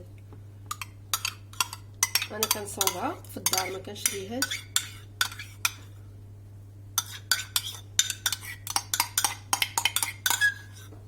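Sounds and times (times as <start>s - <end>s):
spoon clinking on cookware: 0.7s - 5.8s, 7.0s - 10.7s.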